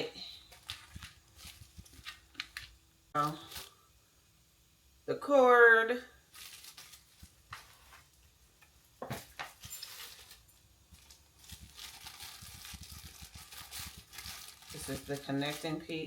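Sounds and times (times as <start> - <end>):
packaging rustling: 0.4 - 2.8, 6.3 - 8.1, 9.2 - 15.9.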